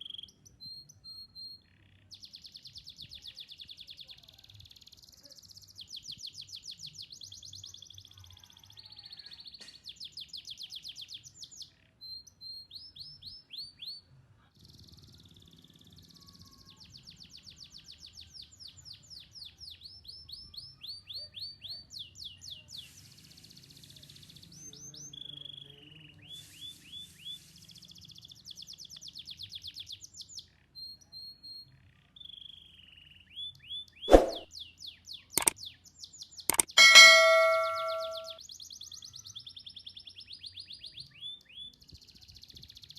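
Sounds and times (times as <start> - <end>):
sharp knock: 34.1 - 34.5, 36.5 - 38.4
canary singing trills: 36.5 - 38.4.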